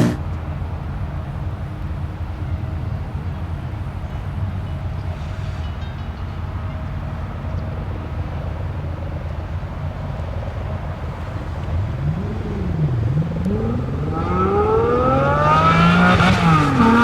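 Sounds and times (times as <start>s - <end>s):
car engine idling and revving: 0.0s - 2.3s, 10.4s - 17.0s.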